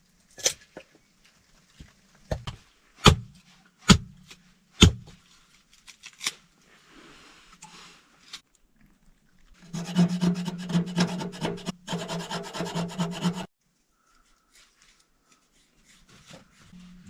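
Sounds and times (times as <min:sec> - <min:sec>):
rasping strokes on wood: 0:09.6 - 0:13.5.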